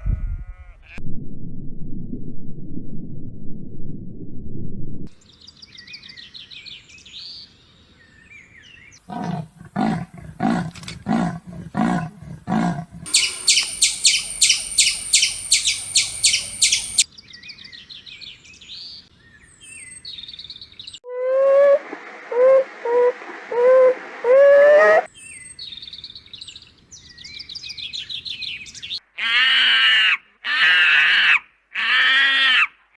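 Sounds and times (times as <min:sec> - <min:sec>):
high warbling birdsong: 0:05.1 - 0:09.0, 0:13.1 - 0:21.0
high chirps: 0:13.1 - 0:17.0
low harsh animal calls: 0:13.1 - 0:17.0.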